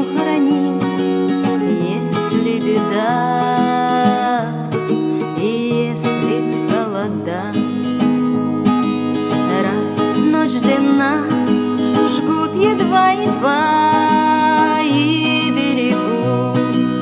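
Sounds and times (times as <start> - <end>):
acoustic guitar: 0.0 - 17.0.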